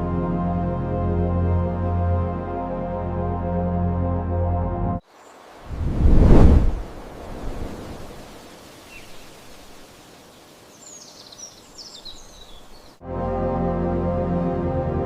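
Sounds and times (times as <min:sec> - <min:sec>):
ambient music: 0:00.0 - 0:05.0, 0:13.0 - 0:15.0
outdoor nature ambience hiss: 0:05.0 - 0:13.0
faint bird chirps: 0:07.6 - 0:13.0.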